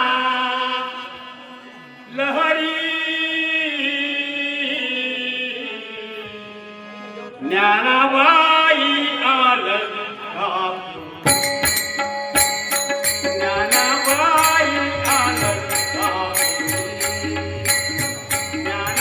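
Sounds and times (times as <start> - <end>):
person singing devotional song: 0.0 - 19.0
drum beating: 11.3 - 19.0.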